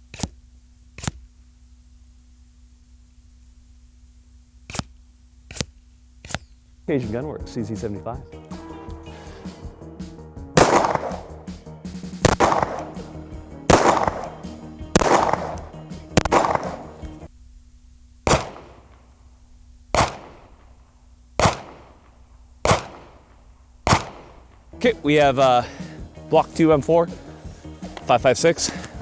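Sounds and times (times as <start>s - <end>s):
background music: 6.8s - 20.7s, 22.7s - 29.0s
gunshots hitting muddy earth: 10.6s - 11.6s, 12.2s - 17.2s, 18.2s - 19.1s, 19.9s - 20.7s, 21.4s - 24.6s.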